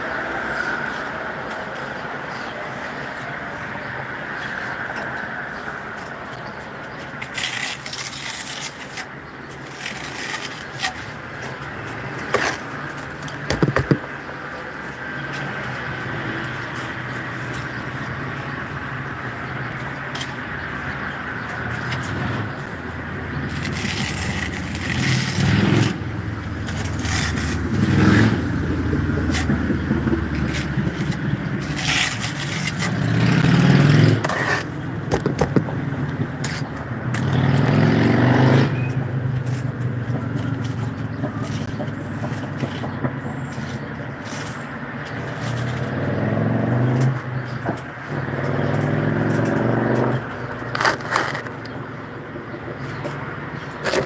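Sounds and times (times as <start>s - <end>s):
scrapes and sharp clicks: 7.2s - 14.1s, 23.5s - 26.0s, 26.6s - 28.0s, 30.3s - 33.0s, 48.7s - 51.8s, 53.8s - 54.0s
engine running: 21.3s - 43.1s.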